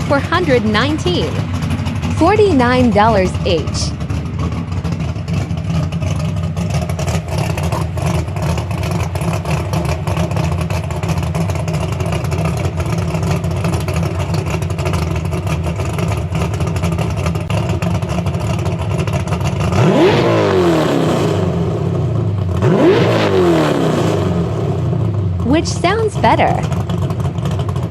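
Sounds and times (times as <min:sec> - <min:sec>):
engine throttle blip: 0:00.0 - 0:05.4
car engine idling: 0:00.0 - 0:27.9.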